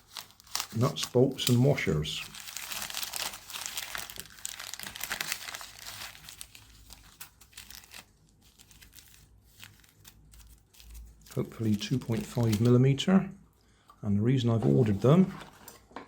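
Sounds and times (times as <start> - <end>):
packaging crinkling: 0.0 - 12.8.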